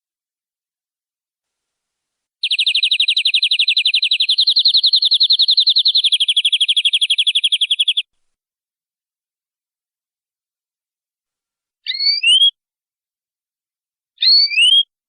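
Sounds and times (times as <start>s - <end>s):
canary trilling: 2.4s - 8.1s, 11.8s - 12.5s, 14.2s - 14.9s.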